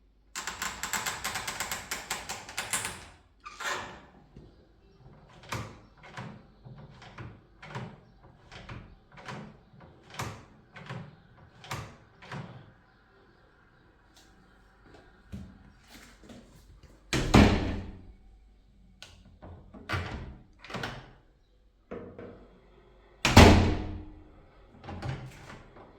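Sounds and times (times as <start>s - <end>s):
door shutting with a bang: 17.2s - 18.0s, 23.3s - 24.2s.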